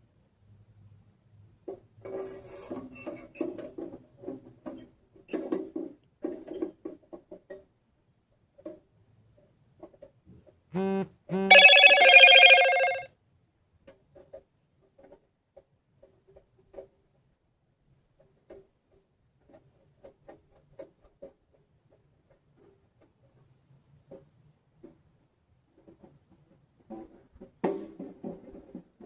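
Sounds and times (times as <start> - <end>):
steady pitched tone: 11.4 - 13.0.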